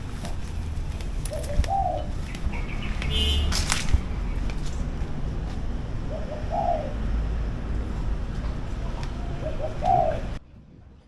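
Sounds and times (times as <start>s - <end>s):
dove cooing: 1.3s - 3.2s, 6.0s - 7.2s, 8.8s - 10.4s.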